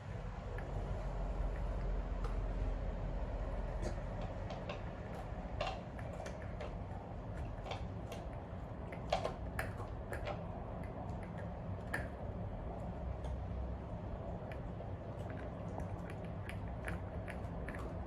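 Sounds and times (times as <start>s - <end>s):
steady low hum: 0.0s - 18.0s
light clicks and taps: 3.8s - 12.2s.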